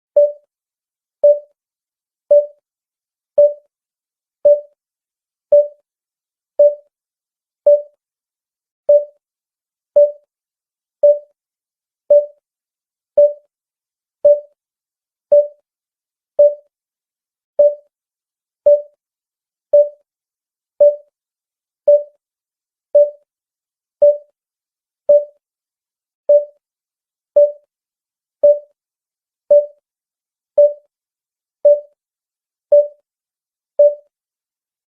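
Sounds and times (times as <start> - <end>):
short electronic beeps: 0.2 - 0.4, 4.5 - 4.7, 8.9 - 9.1, 10.0 - 10.2, 13.2 - 13.4, 26.3 - 26.5, 27.4 - 27.6, 29.5 - 29.7, 32.7 - 33.0, 33.8 - 34.0.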